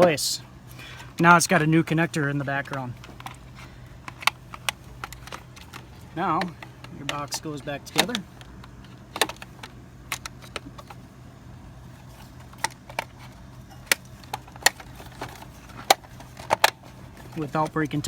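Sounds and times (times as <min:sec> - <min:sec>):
faint steady hum: 0:00.0 - 0:18.0
plastic parts clicking: 0:02.6 - 0:11.0, 0:12.1 - 0:17.9.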